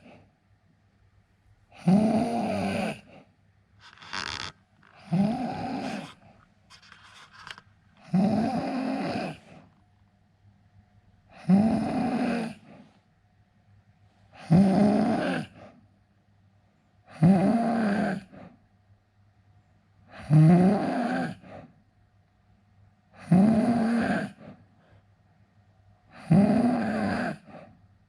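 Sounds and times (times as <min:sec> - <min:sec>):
man snoring: 0:01.8 - 0:03.1, 0:03.8 - 0:06.2, 0:08.1 - 0:09.4, 0:11.4 - 0:12.6, 0:20.2 - 0:21.4, 0:23.2 - 0:24.4, 0:26.2 - 0:27.4.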